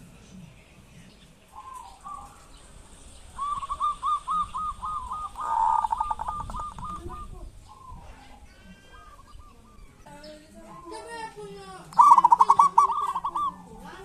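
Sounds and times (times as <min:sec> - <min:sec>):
dove cooing: 0:01.5 - 0:02.6, 0:03.3 - 0:09.8, 0:11.9 - 0:14.0.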